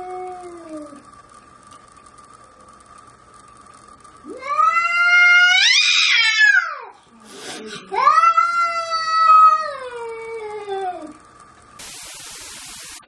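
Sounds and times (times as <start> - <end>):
cat yowling: 4.3 - 6.9.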